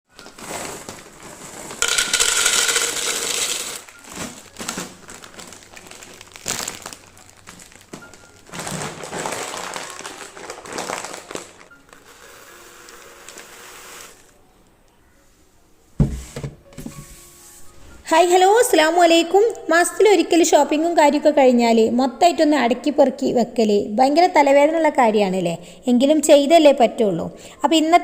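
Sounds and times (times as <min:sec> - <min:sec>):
plastic packaging rustling and clinking: 0:00.1 - 0:14.3.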